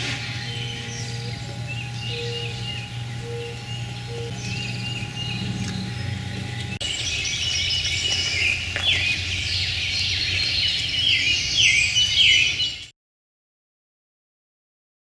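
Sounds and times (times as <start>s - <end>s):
low background rumble: 0.0s - 11.5s
wild birds calling and singing: 0.0s - 12.9s.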